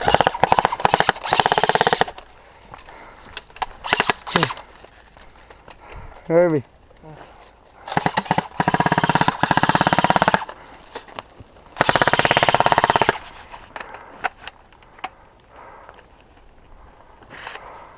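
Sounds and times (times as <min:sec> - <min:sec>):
airsoft gun rapid fire bursts: 0:00.0 - 0:02.1, 0:03.8 - 0:04.5, 0:07.9 - 0:10.5, 0:11.8 - 0:13.2.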